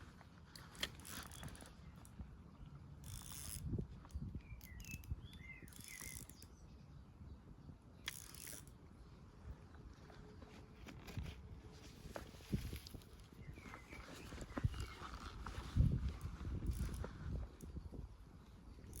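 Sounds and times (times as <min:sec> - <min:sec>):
fishing reel clicking and whirring: 0:00.6 - 0:02.1, 0:03.0 - 0:03.7, 0:04.6 - 0:06.5, 0:08.0 - 0:08.8, 0:16.6 - 0:17.0
bird chirping: 0:04.2 - 0:07.4, 0:13.4 - 0:15.3.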